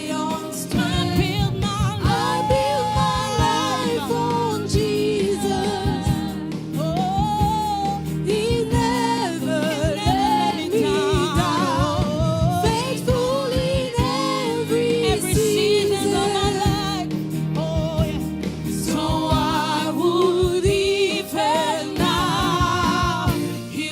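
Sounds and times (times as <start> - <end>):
choir singing: 0.0 - 17.2, 17.8 - 23.9
bass: 0.0 - 23.9
drums beat: 0.0 - 23.9.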